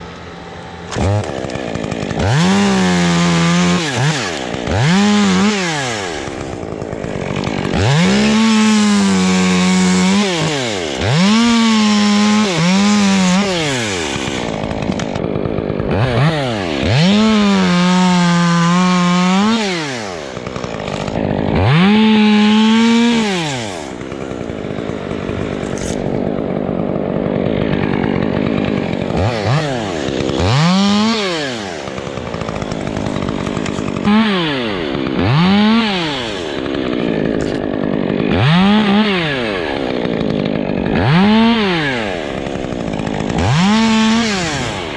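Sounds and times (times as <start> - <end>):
chainsaw revving: 0.0 - 44.9.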